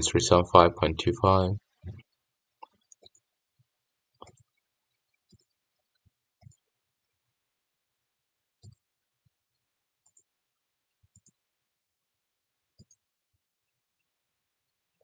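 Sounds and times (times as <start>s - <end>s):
computer mouse clicks: 4.2s - 4.5s, 5.3s - 5.6s, 6.4s - 6.6s, 8.6s - 8.9s, 10.0s - 10.3s, 11.1s - 11.4s, 12.8s - 13.0s.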